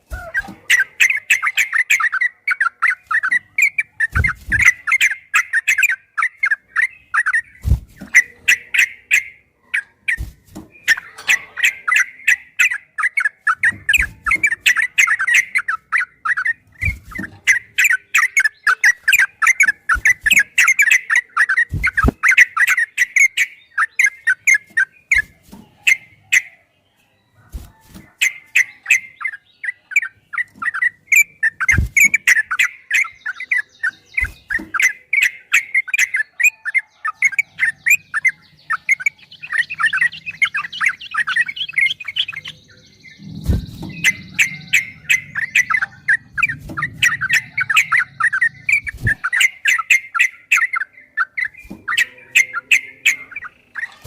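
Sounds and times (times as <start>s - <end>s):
bird chattering song: 0.0s - 54.0s
low thumps: 43.2s - 49.3s.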